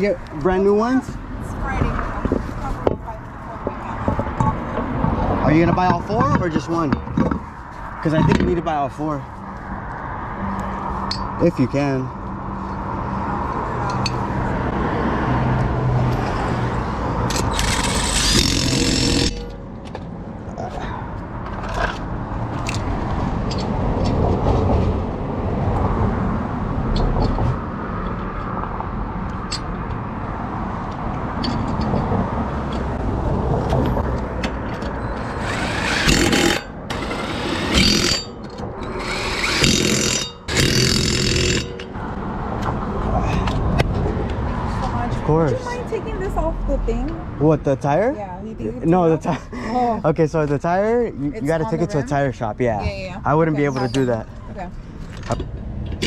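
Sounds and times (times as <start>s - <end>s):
roadside noise: 0.0s - 56.0s
vehicle hum: 0.0s - 56.0s
impact wrench bursts: 17.3s - 19.5s, 35.1s - 42.0s.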